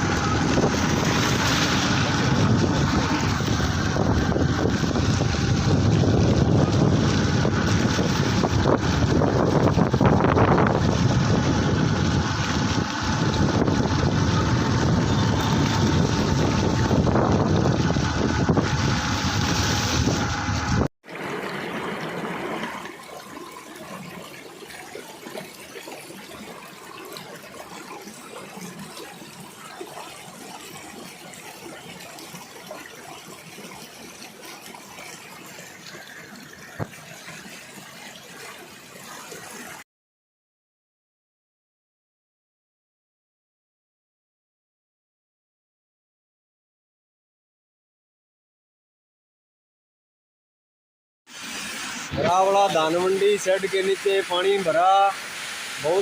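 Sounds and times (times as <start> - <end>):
wind rumbling on microphone: 0.0 - 22.8
flowing floodwater: 0.0 - 39.9, 51.3 - 56.0.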